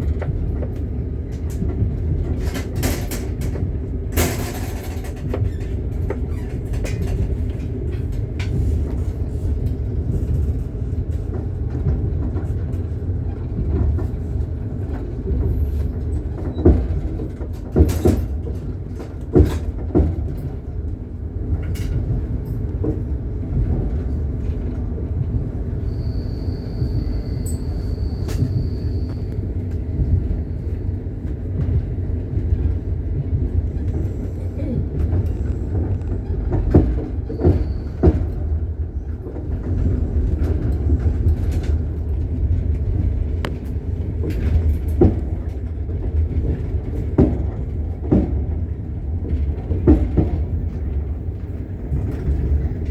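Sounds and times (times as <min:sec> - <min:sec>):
train wheels clacking: 0:00.0 - 0:52.9
low running rumble: 0:28.0 - 0:52.9.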